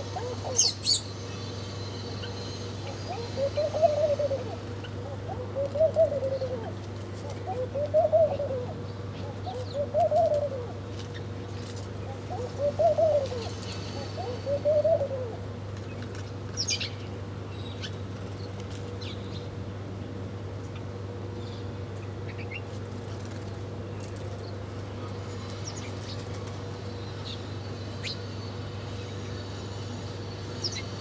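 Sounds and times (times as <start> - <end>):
pigeon cooing: 0.0 - 1.1, 2.8 - 10.9, 12.0 - 15.5
bird chirp: 0.0 - 5.1
steady low hum: 0.0 - 20.5.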